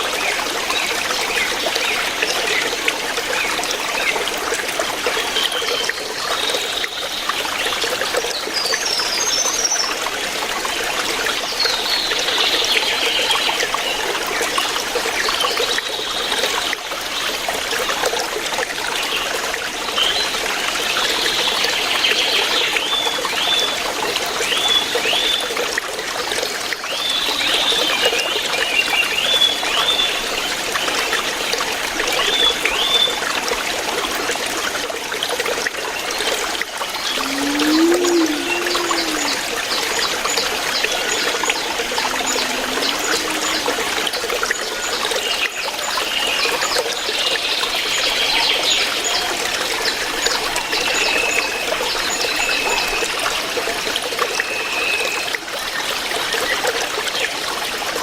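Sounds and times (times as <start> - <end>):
river flowing over rocks: 23.9 - 54.2.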